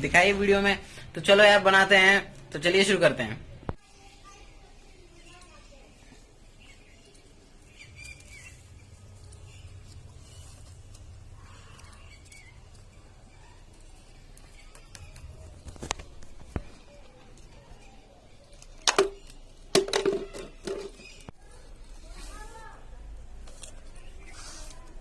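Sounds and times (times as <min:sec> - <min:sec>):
sharp knocks and scraping: 0:18.6 - 0:22.8.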